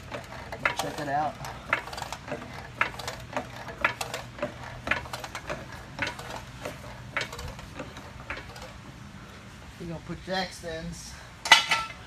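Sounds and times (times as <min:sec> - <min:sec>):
floor jack click-clunk: 0:00.0 - 0:08.7.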